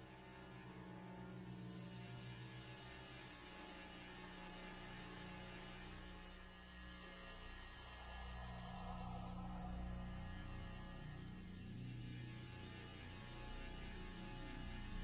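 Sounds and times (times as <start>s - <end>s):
low humming drone: 4.7s - 15.0s.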